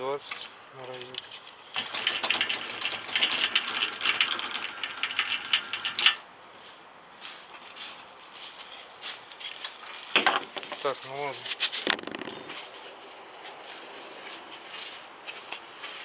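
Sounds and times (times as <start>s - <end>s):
refrigerator compressor rattling: 1.8s - 6.2s.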